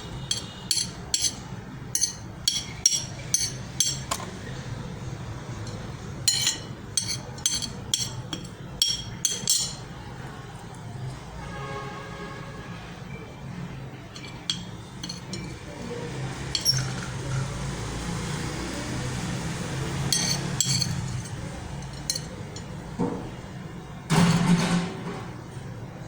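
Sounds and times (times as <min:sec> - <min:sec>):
glassware and utensils clinking: 0:00.2 - 0:04.4, 0:05.6 - 0:10.0, 0:14.1 - 0:17.6, 0:20.0 - 0:22.8
utensils clattering: 0:00.2 - 0:04.4, 0:05.6 - 0:09.9, 0:14.1 - 0:17.6, 0:19.9 - 0:22.8, 0:24.1 - 0:25.4.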